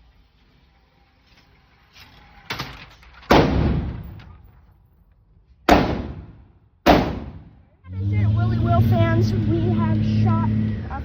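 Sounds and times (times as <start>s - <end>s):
gunshots with echo: 3.3s - 4.1s, 5.7s - 7.6s.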